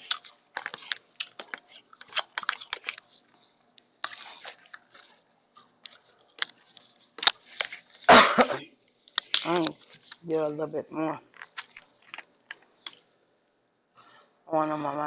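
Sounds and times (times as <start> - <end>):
person chewing crunchy salad: 0.0 - 8.1, 11.3 - 13.2.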